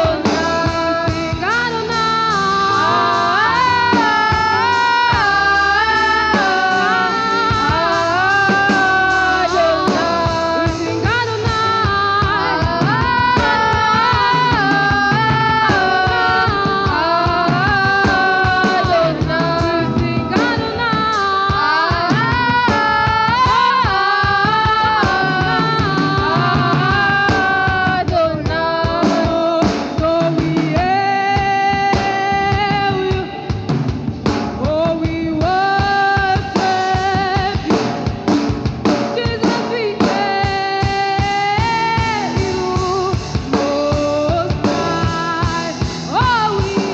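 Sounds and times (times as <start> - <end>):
person singing long held notes: 0.0 - 33.6
band with drums: 0.0 - 46.9.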